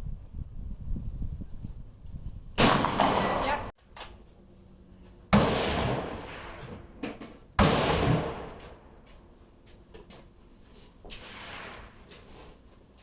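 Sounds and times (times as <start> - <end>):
gunshots: 2.6 - 3.7, 5.3 - 7.0, 7.6 - 8.8.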